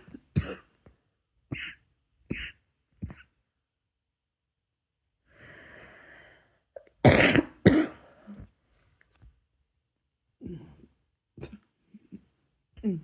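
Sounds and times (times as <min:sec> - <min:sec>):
person coughing hard: 0:00.0 - 0:00.7, 0:01.5 - 0:03.3, 0:07.0 - 0:08.1
person breathing in: 0:05.3 - 0:06.7.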